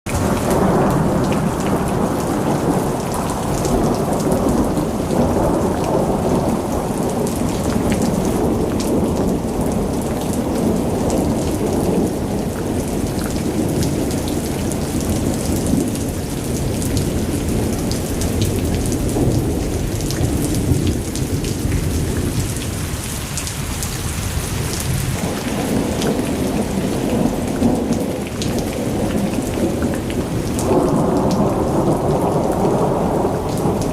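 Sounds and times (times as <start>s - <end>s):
rain falling: 0.1s - 33.9s
thunder rumbling: 0.1s - 33.9s.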